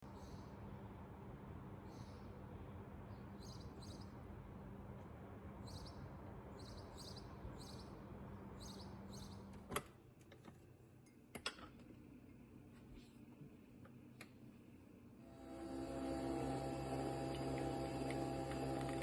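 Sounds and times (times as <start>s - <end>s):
low hum: 14.4s - 19.0s.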